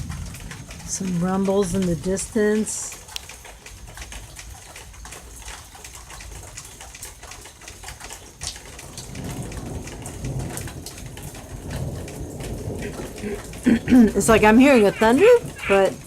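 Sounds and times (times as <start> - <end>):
distant thunder rumbling: 0.0 - 2.9, 8.8 - 16.0
steady rain falling: 0.0 - 16.0
water drips: 0.0 - 16.0.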